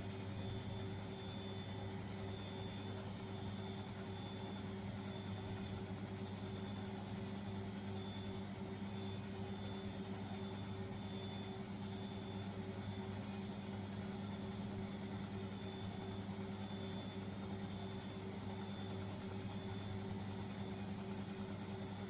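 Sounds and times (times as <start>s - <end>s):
faint high whine: 0.0s - 22.0s
washing machine spinning: 0.0s - 22.0s.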